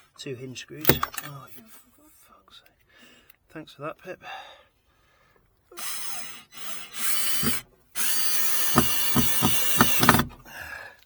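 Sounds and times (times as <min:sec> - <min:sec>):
regular knocking of screw: 0:00.8 - 0:01.3, 0:06.6 - 0:10.5
power drill driving screw: 0:00.9 - 0:01.3, 0:05.8 - 0:10.4.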